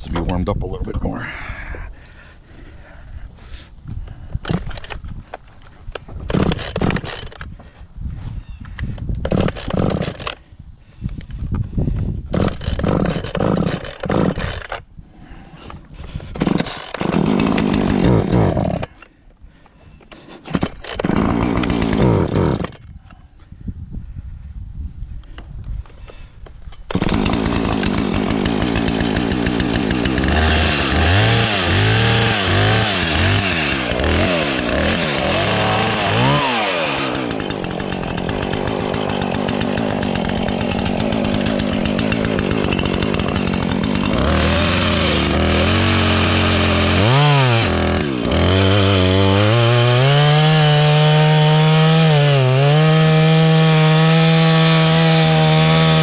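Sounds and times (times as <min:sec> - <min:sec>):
chainsaw revving and cutting wood: 0:04.4 - 0:05.0, 0:06.0 - 0:07.5, 0:09.2 - 0:10.4, 0:12.3 - 0:14.9, 0:15.6 - 0:19.1, 0:20.1 - 0:22.9, 0:26.8 - 0:56.0.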